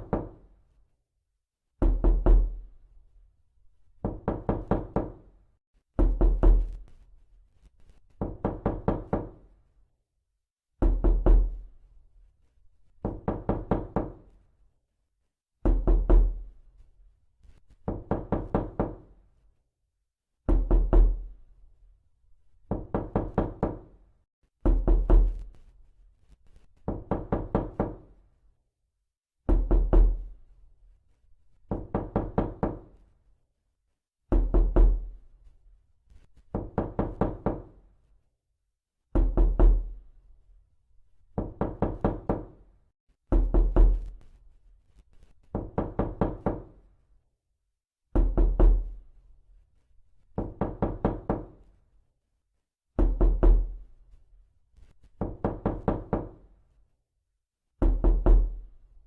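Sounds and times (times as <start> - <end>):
knocking on a door: 0.0 - 0.5, 1.8 - 2.7, 4.0 - 5.3, 6.0 - 6.9, 8.2 - 9.5, 10.8 - 11.6, 13.0 - 14.3, 15.6 - 16.5, 17.8 - 19.1, 20.5 - 21.3, 22.6 - 24.0, 24.6 - 25.5, 26.8 - 28.1, 29.5 - 30.3, 31.7 - 33.0, 34.3 - 35.1, 36.5 - 37.8, 39.1 - 40.0, 41.3 - 42.6, 43.3 - 44.2, 45.5 - 46.8, 48.1 - 49.0, 50.4 - 51.7, 53.0 - 53.8, 55.1 - 56.4, 57.8 - 58.6.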